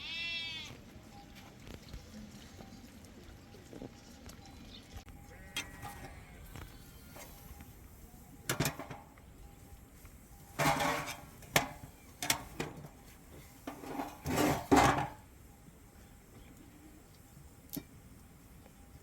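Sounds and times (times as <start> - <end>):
dishes and utensils knocking: 10.6 - 12.8.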